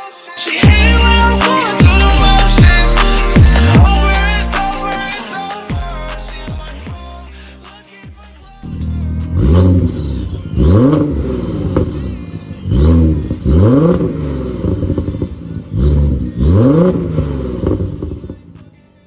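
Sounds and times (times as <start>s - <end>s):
car engine revving: 0.6s - 5.2s, 8.5s - 18.8s.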